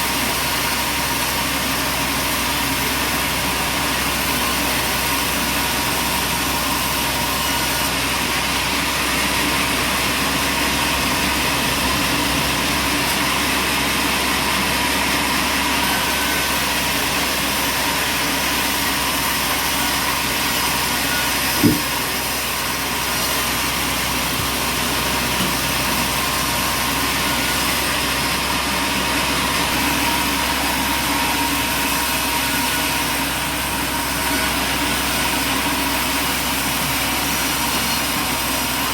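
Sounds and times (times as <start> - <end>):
sawmill machinery running: 0.0 - 38.9
sharp knock: 21.6 - 21.9.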